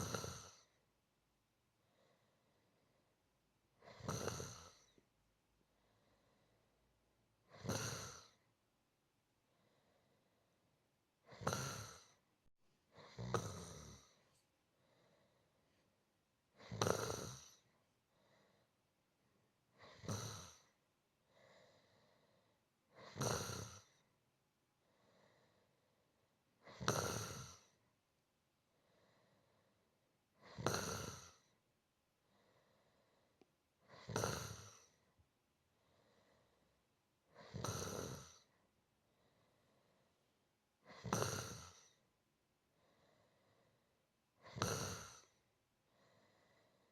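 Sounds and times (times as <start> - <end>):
person snoring: 0.0 - 0.8, 3.8 - 5.0, 7.4 - 8.5, 11.2 - 12.2, 12.9 - 14.2, 16.5 - 18.6, 19.7 - 24.1, 26.6 - 27.8, 30.4 - 31.6, 32.3 - 35.1, 37.3 - 38.5, 40.8 - 42.0, 44.4 - 45.4
faint breathing: 1.7 - 3.2, 5.7 - 6.8, 9.4 - 10.7, 13.3 - 16.0, 17.2 - 19.0, 19.7 - 23.0, 24.8 - 26.3, 28.7 - 30.0, 32.2 - 37.7, 38.3 - 40.4, 41.9 - 44.0, 45.2 - 46.9.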